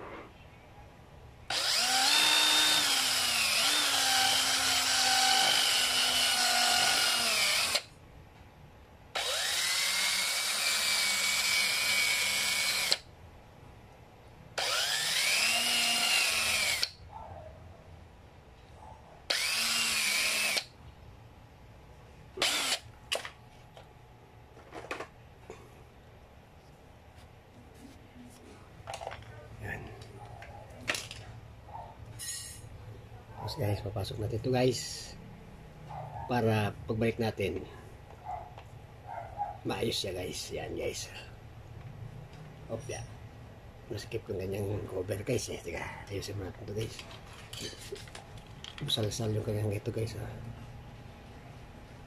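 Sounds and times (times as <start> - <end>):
power drill whining: 1.5 - 7.9, 9.2 - 13.0, 14.6 - 17.0, 19.3 - 20.7, 22.4 - 22.9.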